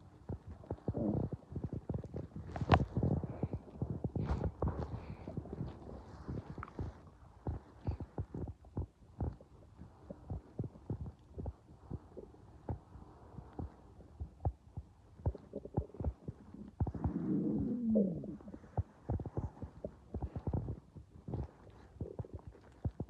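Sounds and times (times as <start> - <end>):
stomach clicks and thumps: 0.0 - 23.0
stomach gurgling rumble: 0.0 - 23.0.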